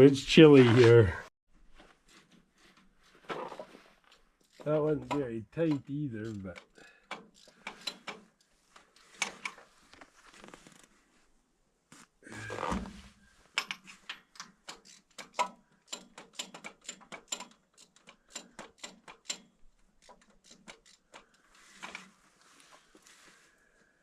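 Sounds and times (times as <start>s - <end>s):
socket ratchet clicking: 13.6s - 21.4s.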